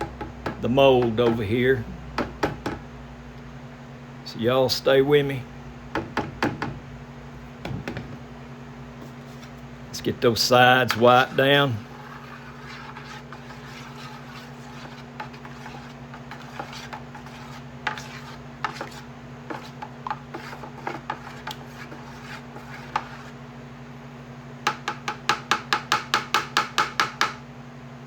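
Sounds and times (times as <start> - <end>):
steady low hum: 0.0 - 24.9
rubbing and scraping strokes: 9.0 - 9.6, 11.0 - 23.4.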